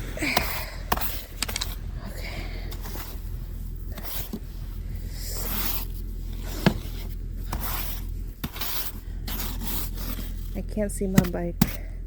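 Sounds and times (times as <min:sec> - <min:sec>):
snow brush scraping icy snow: 0:04.0 - 0:04.4, 0:05.1 - 0:10.6.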